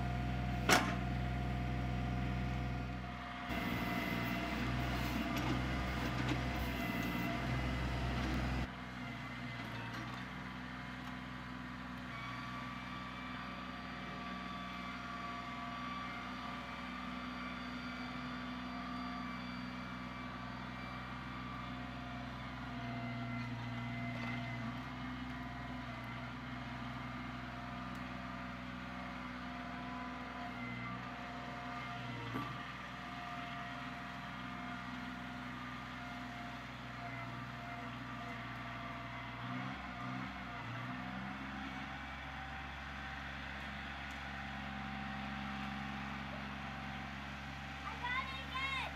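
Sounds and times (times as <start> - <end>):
tractor diesel engine running: 0.0 - 9.6, 30.9 - 48.8.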